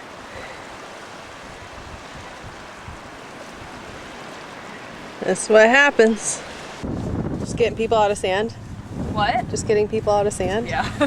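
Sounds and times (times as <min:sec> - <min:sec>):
surf breaking on a beach: 0:00.0 - 0:11.0
wind gusting on microphone: 0:00.0 - 0:11.0.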